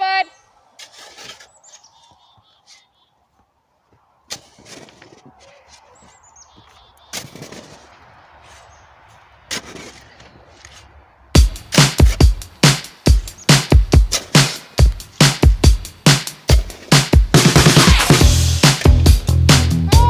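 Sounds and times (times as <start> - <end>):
snow shovel hitting and scraping snow: 0.8 - 2.0, 4.3 - 20.0.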